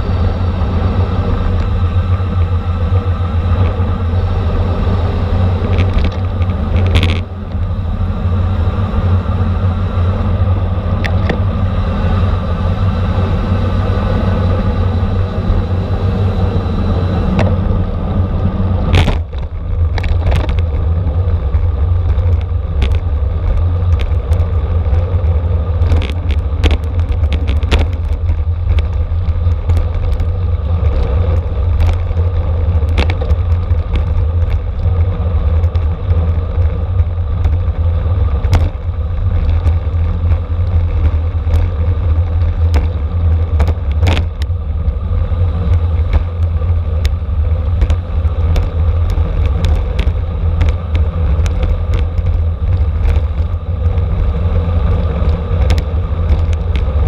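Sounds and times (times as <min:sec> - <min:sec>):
wind rumble on microphone: 0:00.0 - 0:57.0
sharp clicks and rattles: 0:05.2 - 0:07.9, 0:10.3 - 0:12.5, 0:17.0 - 0:57.0.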